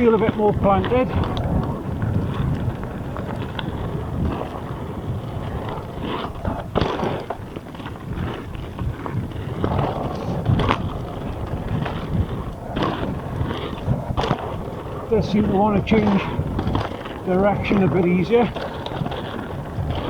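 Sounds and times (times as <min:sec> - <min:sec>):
bike tyres rumbling and rattling: 0:00.0 - 0:20.0
wind on microphone: 0:00.0 - 0:20.0
sharp knocks over bumps: 0:05.6 - 0:20.0.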